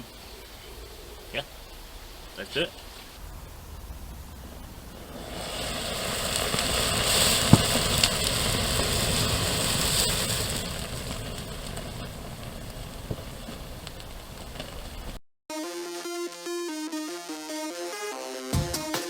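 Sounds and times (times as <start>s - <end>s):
thermite burning with rushing hiss: 0.0s - 15.2s.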